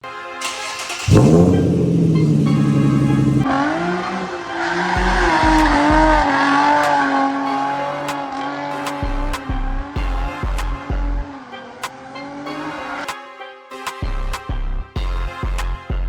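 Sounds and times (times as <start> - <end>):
music with deep bass beat: 5.0 - 6.3, 9.1 - 11.3, 15.0 - 16.0.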